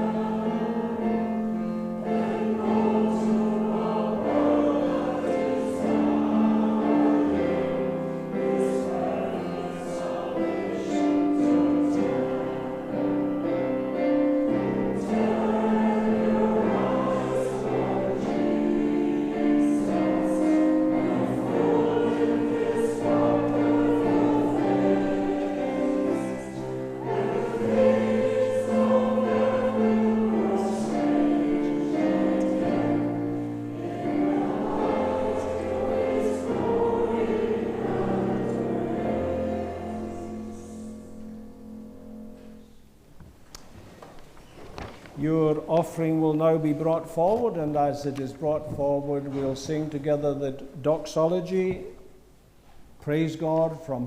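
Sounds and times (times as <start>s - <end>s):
choir singing a hymn: 0.0s - 43.0s.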